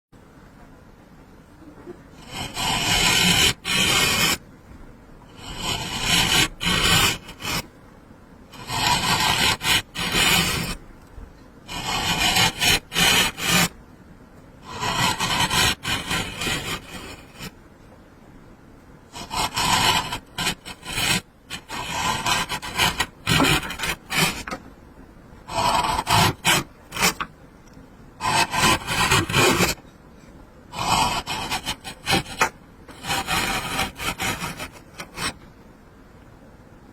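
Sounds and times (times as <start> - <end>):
hand tool scraping wood: 2.2 - 4.4, 5.4 - 7.7, 8.6 - 10.8, 11.7 - 13.8, 14.7 - 17.5, 19.2 - 24.6, 25.5 - 27.3, 28.2 - 29.8, 30.8 - 35.4.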